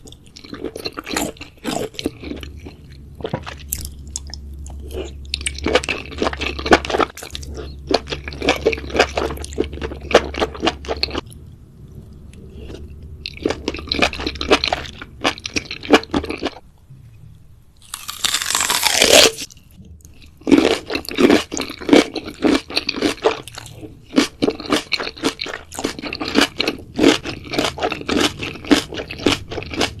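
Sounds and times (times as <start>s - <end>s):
crunchy bites and chewing: 0.0s - 11.3s, 17.8s - 30.0s.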